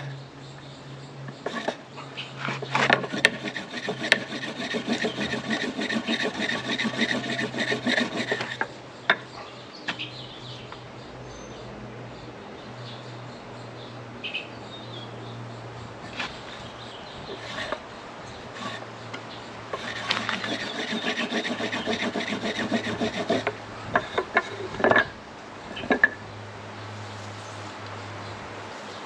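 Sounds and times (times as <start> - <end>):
wooden board rasping over cotton: 1.5 - 1.8, 3.0 - 8.7, 18.5 - 18.8, 19.7 - 23.6.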